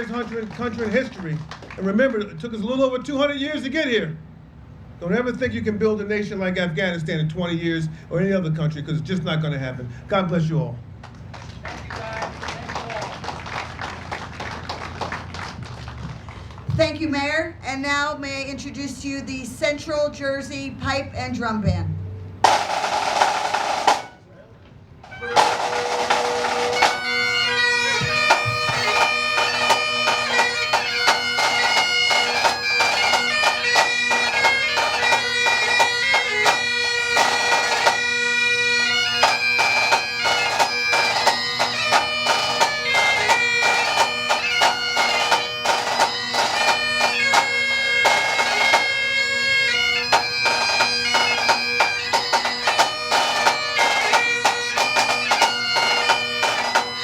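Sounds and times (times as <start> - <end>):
drums beating: 11.8 - 15.6, 21.7 - 24.2, 25.0 - 38.2, 38.8 - 57.0
bagpipe drones: 22.4 - 24.2, 25.0 - 57.0
bagpipe melody: 22.4 - 24.3, 25.0 - 57.0.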